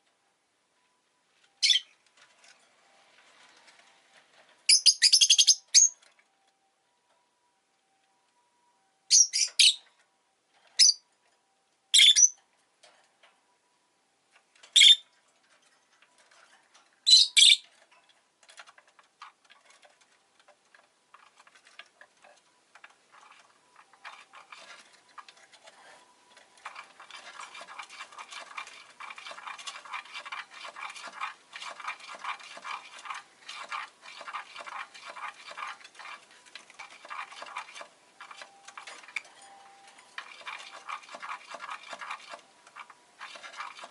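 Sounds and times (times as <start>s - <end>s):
scratching and rustling: 1.4s - 4.7s, 14.3s - 43.9s
bird chirps: 1.6s - 1.9s, 4.7s - 6.0s, 9.1s - 9.9s, 12.0s - 12.4s, 14.8s - 15.0s, 17.1s - 17.7s.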